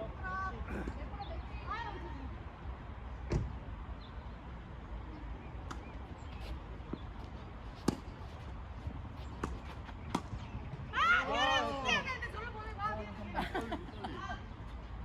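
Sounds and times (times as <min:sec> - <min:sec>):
tennis ball bouncing on court: 0:05.6 - 0:10.5
tennis ball hitting racket: 0:05.7 - 0:08.5, 0:09.1 - 0:10.3.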